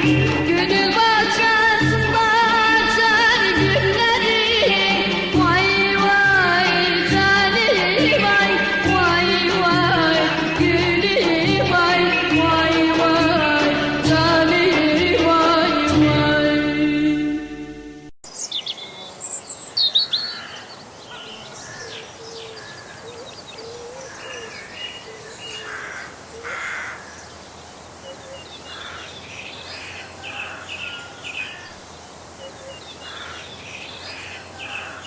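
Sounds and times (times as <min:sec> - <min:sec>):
small birds chirping: 0:02.8 - 0:05.2, 0:07.4 - 0:08.6, 0:18.3 - 0:35.0
quick high bird notes: 0:07.6 - 0:08.6.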